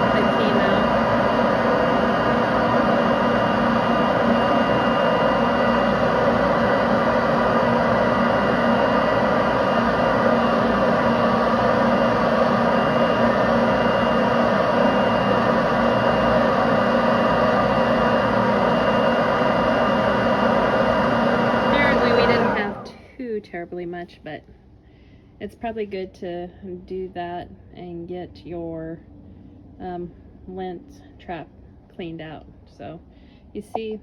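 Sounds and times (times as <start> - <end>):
leaf blower running: 0.0 - 23.1.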